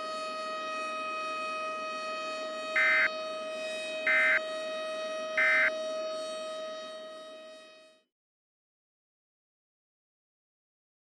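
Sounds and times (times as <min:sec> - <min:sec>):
steady buzzing tone: 0:02.8 - 0:03.1, 0:04.1 - 0:04.4, 0:05.4 - 0:05.7.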